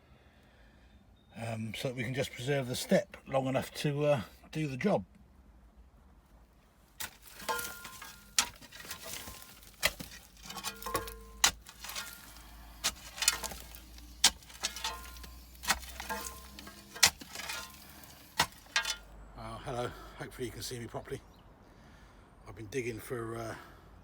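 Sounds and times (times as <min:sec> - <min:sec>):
gritty scraping: 0:06.9 - 0:19.1
metal tool hitting soil: 0:07.0 - 0:19.1.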